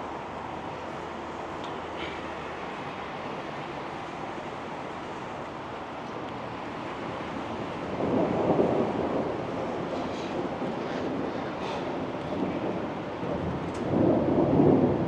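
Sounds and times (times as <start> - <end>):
wind noise on microphone: 6.4 - 15.0
thunder rumble: 6.5 - 15.0.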